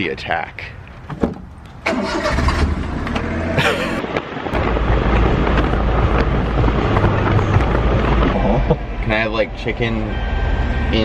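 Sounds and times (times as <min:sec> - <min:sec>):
car engine running: 0:04.6 - 0:11.0.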